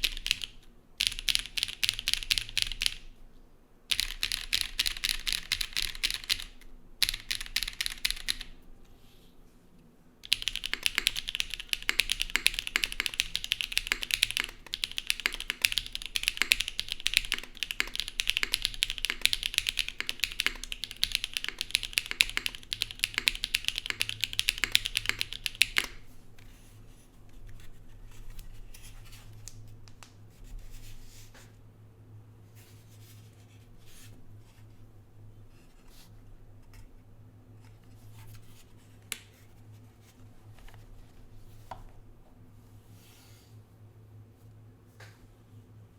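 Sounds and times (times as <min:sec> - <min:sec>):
mechanical keyboard typing: 0:00.0 - 0:03.1, 0:03.9 - 0:08.6, 0:10.2 - 0:26.1.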